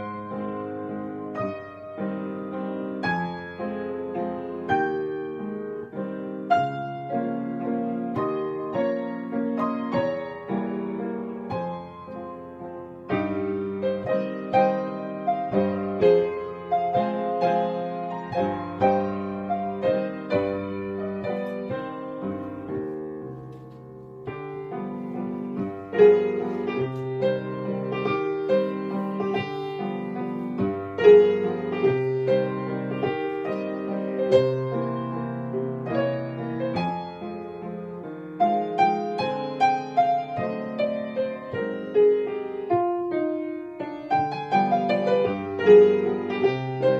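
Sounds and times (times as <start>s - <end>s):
piano waltz: 0.0s - 46.9s.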